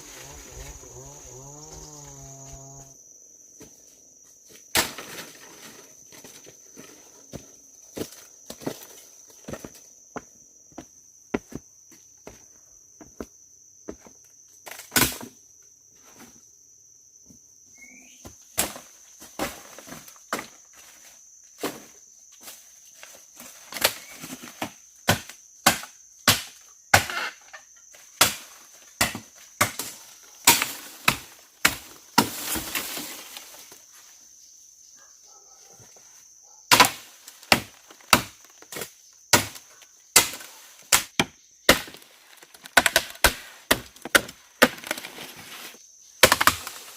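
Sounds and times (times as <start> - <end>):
high insect drone: 0.0 - 46.9
chopping wood: 23.8 - 27.4, 28.2 - 32.8, 36.7 - 39.6, 40.2 - 42.0, 42.6 - 45.1, 46.2 - 46.8.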